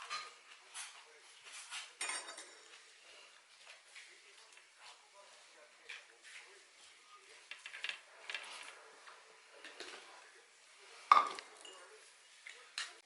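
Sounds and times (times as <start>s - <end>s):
dishes and utensils clinking: 0.0s - 2.9s, 11.0s - 13.0s.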